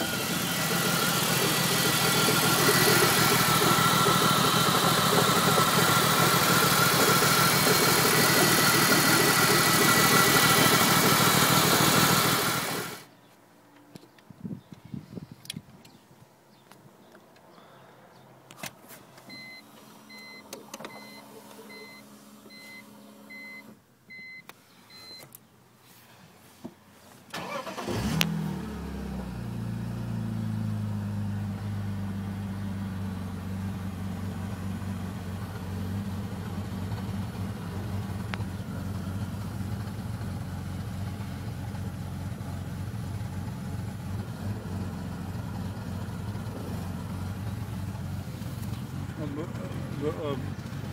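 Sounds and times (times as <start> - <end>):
car engine cranking and idling: 0.0 - 13.1, 27.3 - 50.9
car warning chime beeping: 19.3 - 25.2.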